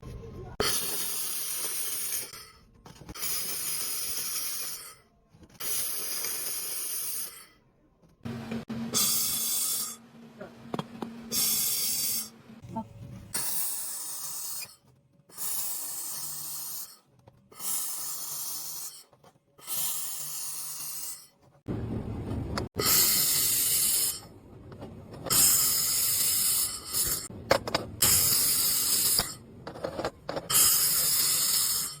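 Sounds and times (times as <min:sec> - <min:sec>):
laser welding gun hissing: 0:11.3 - 0:12.3.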